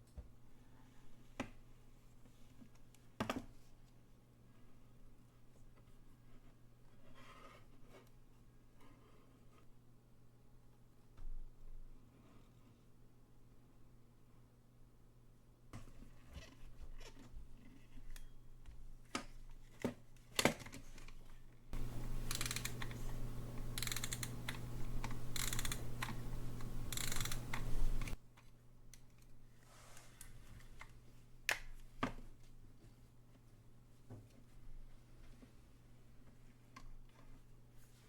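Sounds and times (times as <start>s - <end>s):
alarm clock clicks and taps: 21.8s - 28.2s
continuous rasping rattle: 21.8s - 28.2s.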